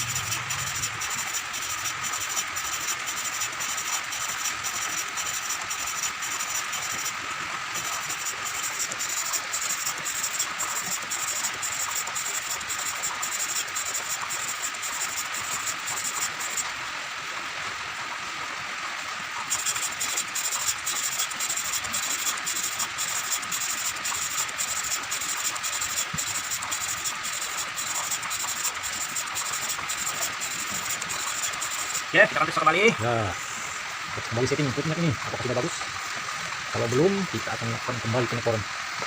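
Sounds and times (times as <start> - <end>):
gritty rasping valve lapping: 0.0 - 16.7, 19.4 - 35.0.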